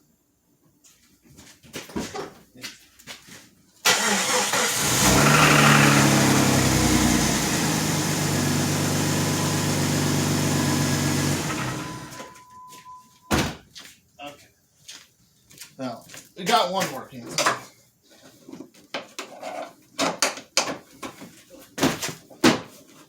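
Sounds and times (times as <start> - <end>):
vehicle engine starting and running: 3.9 - 12.3
steady high beep: 11.8 - 13.3.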